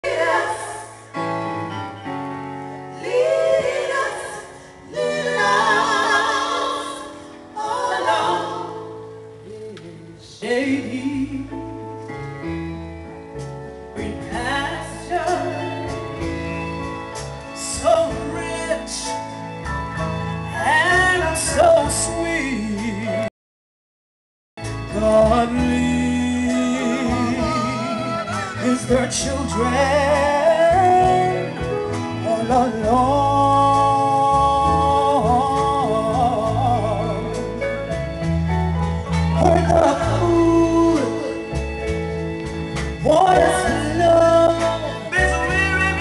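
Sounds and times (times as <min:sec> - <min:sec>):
gospel group singing: 0:00.0 - 0:01.8, 0:02.8 - 0:11.4, 0:14.0 - 0:19.0, 0:24.9 - 0:37.6, 0:39.0 - 0:46.0
keyboard playing: 0:10.6 - 0:23.3, 0:24.6 - 0:46.0
bass line: 0:24.6 - 0:46.0.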